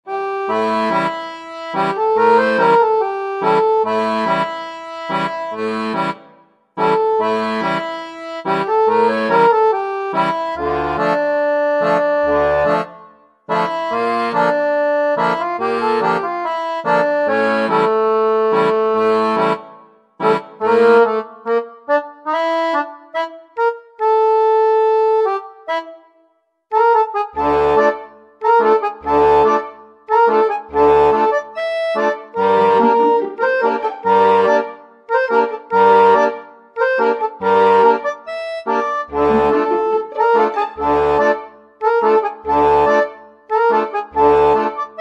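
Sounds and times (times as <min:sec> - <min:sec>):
rhythmic instrumental music: 0:00.1 - 0:26.0, 0:26.7 - 0:45.0.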